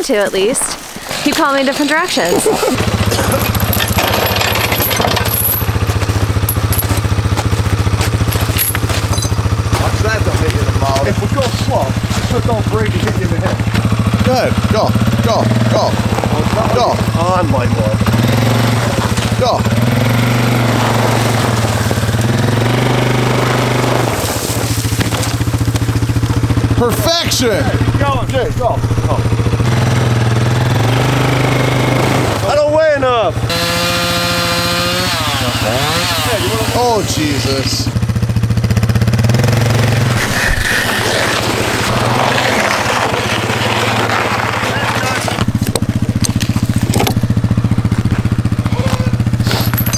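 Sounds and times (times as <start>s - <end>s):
small engine running: 1.8s - 49.9s.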